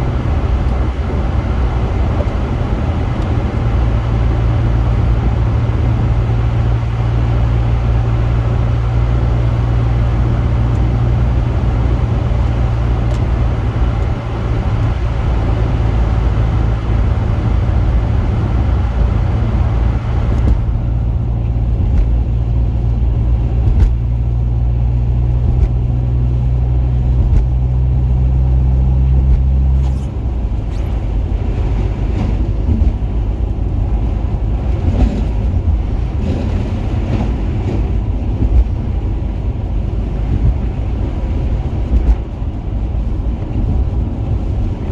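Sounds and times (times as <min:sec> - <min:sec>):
car engine and road noise: 0:00.0 - 0:44.9.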